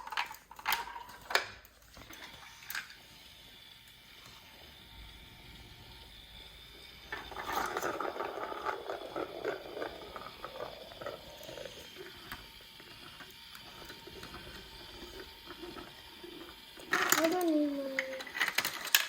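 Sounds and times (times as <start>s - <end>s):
marbles clattering on plastic: 0.0s - 3.0s, 7.1s - 19.0s.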